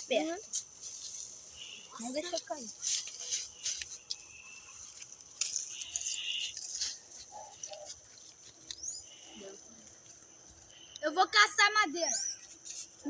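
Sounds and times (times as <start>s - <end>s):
dry brush rustling and snapping: 0.0s - 9.2s.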